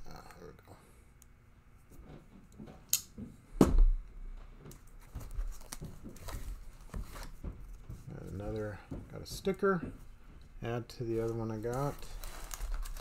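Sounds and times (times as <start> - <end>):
paper packaging rustling and tearing: 5.2 - 7.4, 11.2 - 13.0.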